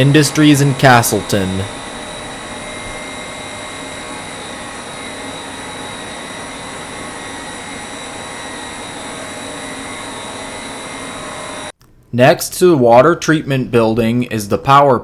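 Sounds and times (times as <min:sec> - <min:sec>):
pumps running: 0:00.0 - 0:11.7
faint high whine: 0:00.0 - 0:11.8.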